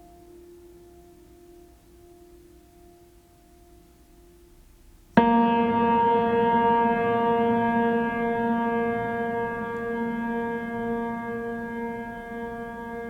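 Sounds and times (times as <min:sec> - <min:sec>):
sustained musical tone: 0:05.2 - 0:13.0.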